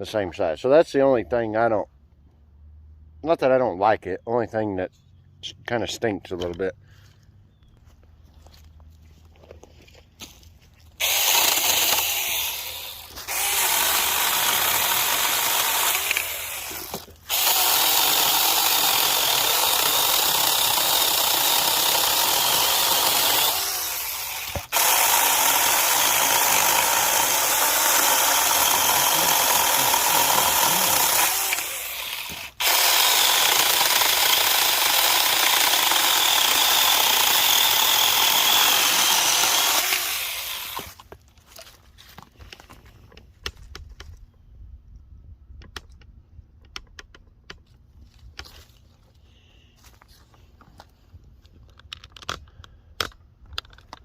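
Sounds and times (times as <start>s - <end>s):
handheld chainsaw cutting wood: 10.9s - 41.2s.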